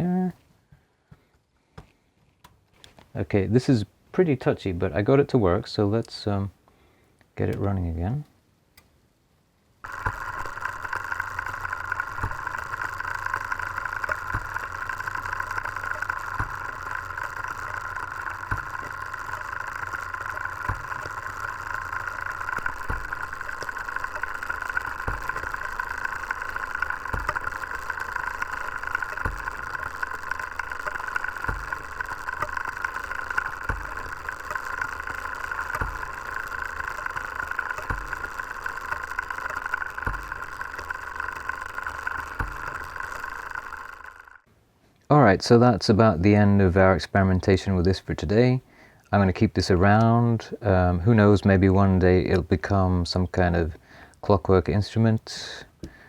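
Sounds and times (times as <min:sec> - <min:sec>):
clockwork mechanism whirring: 0:09.8 - 0:44.5, 0:45.4 - 0:56.0
soft mechanical knock: 0:09.9 - 0:44.1.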